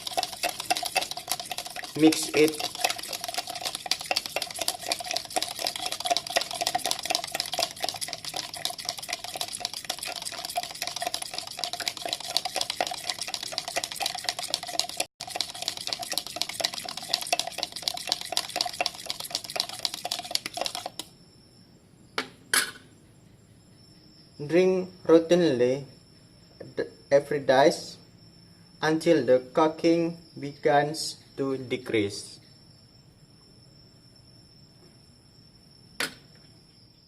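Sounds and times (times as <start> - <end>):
metal spoon clinking in container: 0.0 - 20.9.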